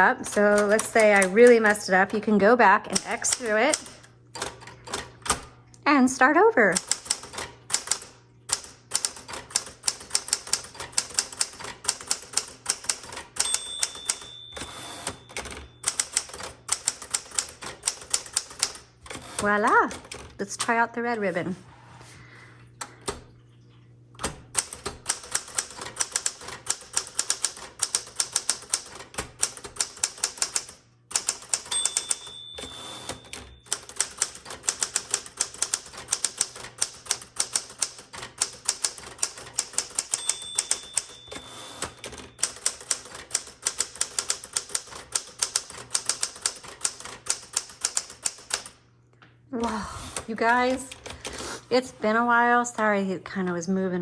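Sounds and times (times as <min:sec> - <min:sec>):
manual typewriter typing: 0:00.0 - 0:05.6, 0:06.6 - 0:20.8, 0:24.2 - 0:48.8, 0:50.1 - 0:51.6
typewriter margin bell ringing: 0:12.8 - 0:17.3, 0:31.2 - 0:35.7, 0:39.6 - 0:44.3.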